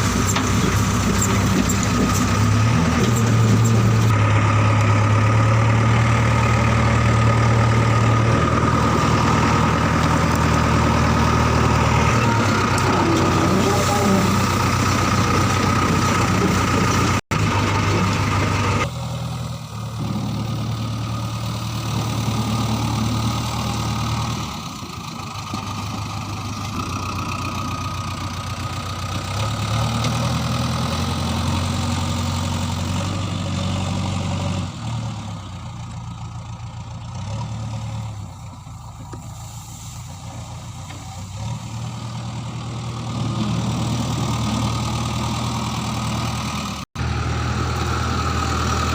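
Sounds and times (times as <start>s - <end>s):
heavy diesel engine running: 0.0s - 48.9s.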